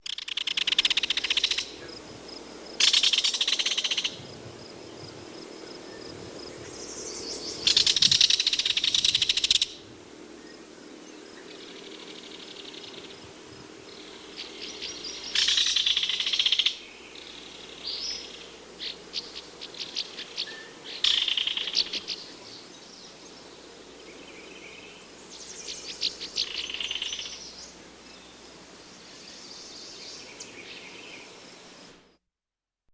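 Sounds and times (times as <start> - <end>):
kingfisher rattle call: 0.0 - 1.8, 2.8 - 4.2, 7.6 - 9.8, 14.4 - 16.8, 19.9 - 22.2.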